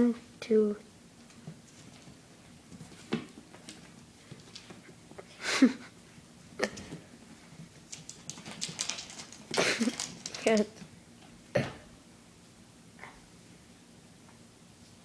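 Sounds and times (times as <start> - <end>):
cat paws scrambling on hard floor: 6.6 - 10.8.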